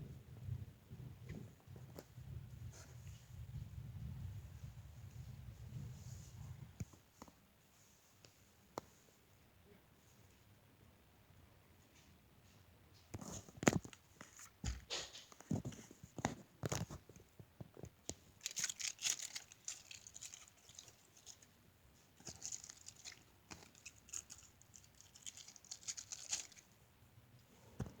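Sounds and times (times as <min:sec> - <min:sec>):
crisp crinkling: 0:15.4 - 0:26.8.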